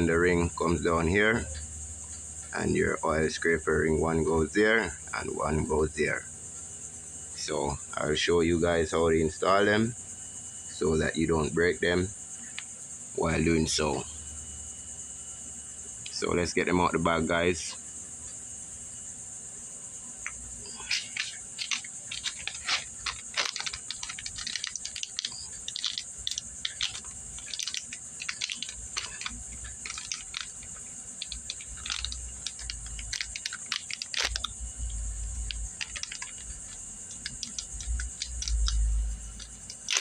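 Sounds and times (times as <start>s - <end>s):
plastic packaging crinkling: 20.9s - 40.0s.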